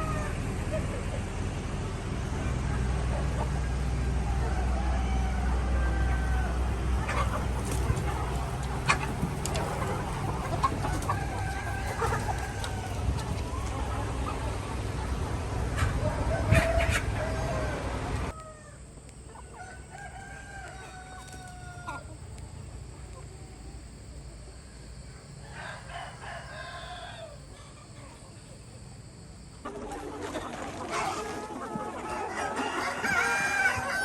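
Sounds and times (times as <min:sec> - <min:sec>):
roosters crowing: 0:00.0 - 0:22.3, 0:25.3 - 0:28.1, 0:29.6 - 0:34.0
chickens clucking: 0:00.0 - 0:34.0.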